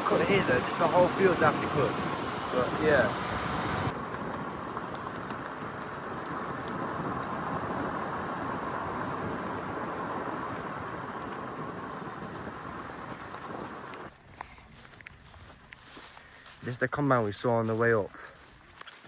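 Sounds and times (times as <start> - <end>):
vehicle driving: 0.0 - 14.1.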